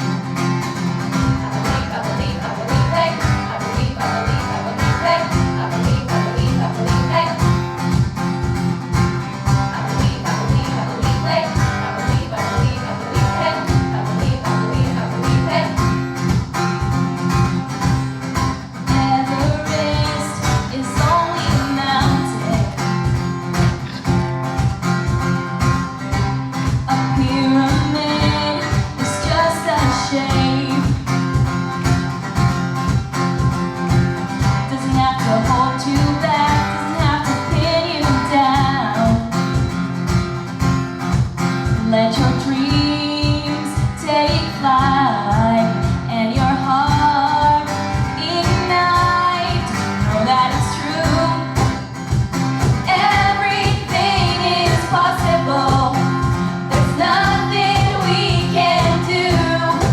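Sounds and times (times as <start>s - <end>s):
guitar with steady beat: 0.0s - 59.9s
person singing: 0.8s - 8.0s, 9.4s - 16.0s, 18.0s - 23.1s, 26.9s - 31.1s, 34.6s - 39.3s, 52.7s - 59.9s.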